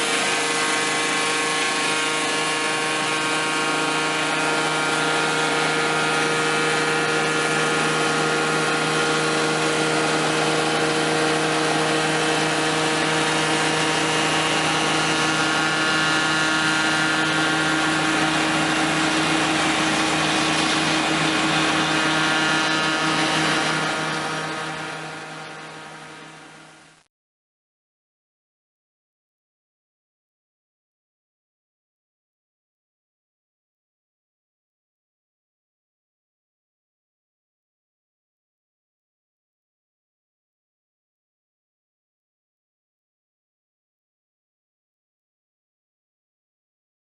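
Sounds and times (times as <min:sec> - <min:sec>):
log cutting machine whining: 0:00.0 - 0:27.0.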